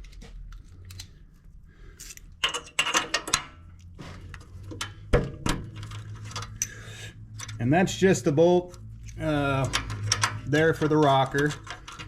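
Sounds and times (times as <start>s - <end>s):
metal tools clicking and clinking: 2.0s - 7.7s, 8.7s - 12.0s.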